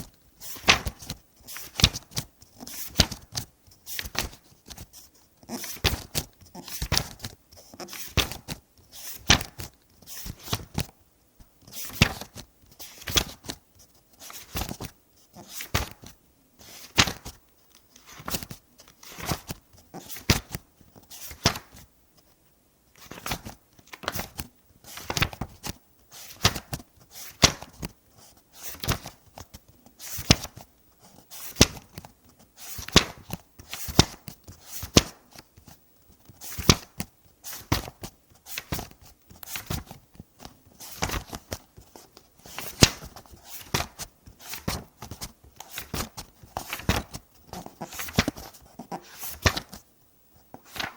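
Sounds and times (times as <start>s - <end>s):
book pages turning: 0.0s - 22.4s, 23.0s - 49.8s, 50.4s - 50.9s.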